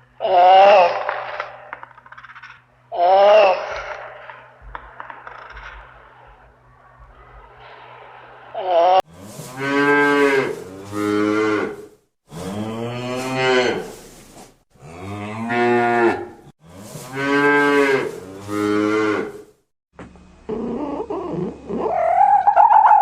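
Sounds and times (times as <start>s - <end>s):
cow mooing: 8.8s - 14.0s, 14.8s - 19.4s.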